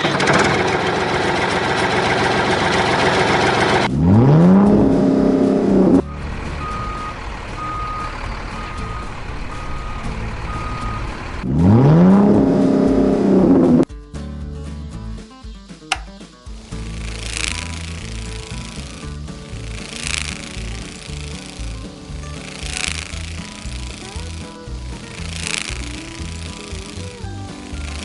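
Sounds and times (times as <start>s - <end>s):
toy truck engine revving: 0.0s - 13.8s, 16.7s - 28.0s
reversing beeps: 6.0s - 11.2s.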